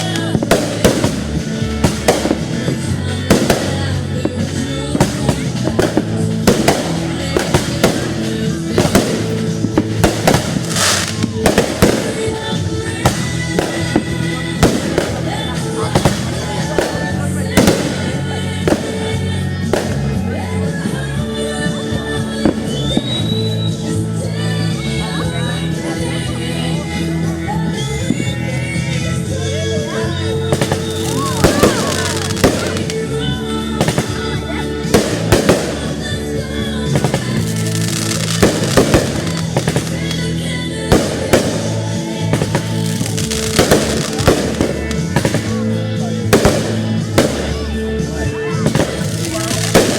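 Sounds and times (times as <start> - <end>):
fireworks banging: 0.0 - 20.2, 30.4 - 49.9
loud music with held notes: 0.0 - 49.9.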